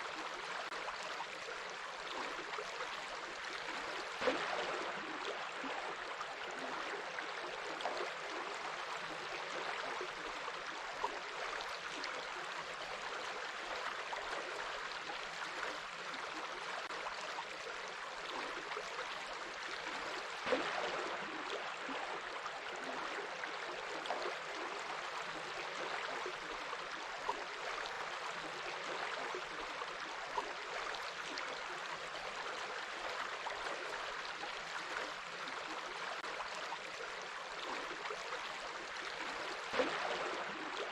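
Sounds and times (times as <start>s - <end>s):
stream of water flowing: 0.0s - 40.9s
water splashes: 1.6s - 10.1s, 18.3s - 31.7s, 34.8s - 40.9s.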